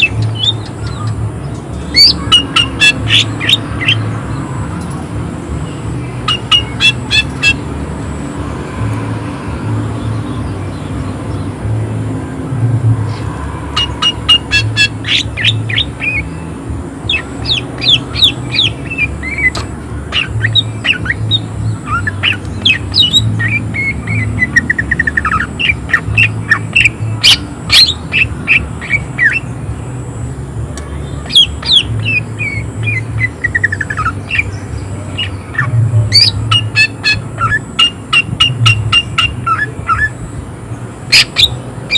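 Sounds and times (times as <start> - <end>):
bird singing chirps and whistles: 0.0 - 1.2, 6.3 - 7.6, 13.8 - 16.5, 17.1 - 29.5, 31.0 - 40.2.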